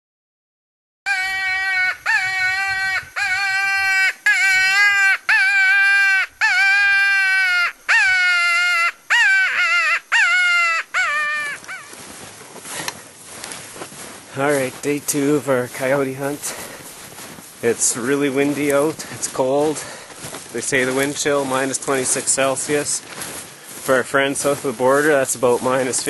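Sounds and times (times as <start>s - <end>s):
coyote-style howls: 1.1s - 12.0s
wind noise: 1.1s - 26.0s.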